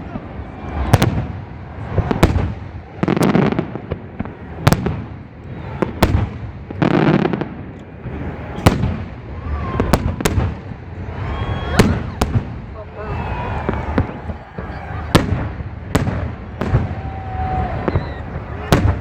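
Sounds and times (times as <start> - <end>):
fireworks cracking: 0.0 - 19.0
fireworks rumbling booms: 0.0 - 19.0.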